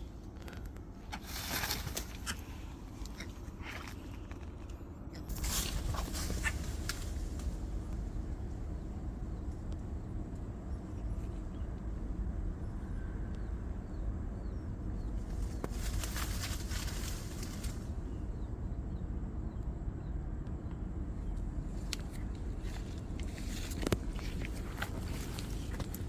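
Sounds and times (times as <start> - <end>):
wind rumbling on microphone: 5.3 - 26.0.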